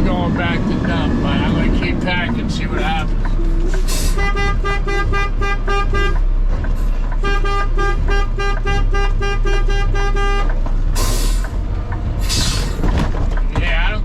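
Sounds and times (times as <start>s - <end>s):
truck engine running: 0.0s - 14.0s.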